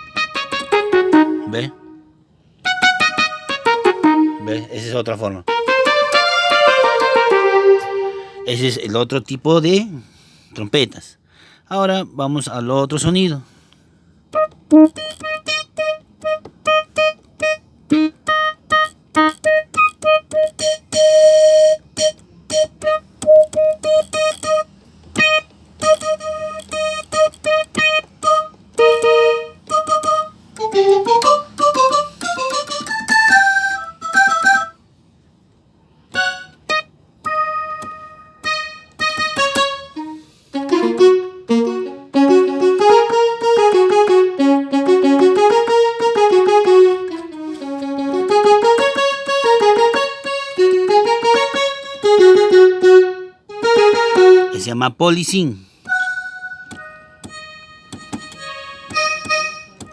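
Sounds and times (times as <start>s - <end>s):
electronic keyboard playing: 0.0s - 8.8s, 14.3s - 34.8s, 36.1s - 59.9s.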